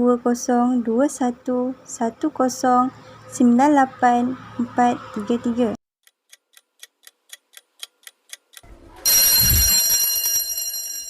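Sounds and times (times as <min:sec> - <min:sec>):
clock ticking: 0:06.0 - 0:08.7
loud bell ring with low thud: 0:09.1 - 0:11.0.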